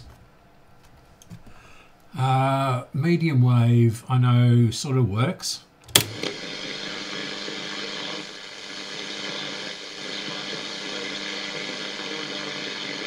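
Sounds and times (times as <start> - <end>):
radio static hiss: 6.0 - 13.0.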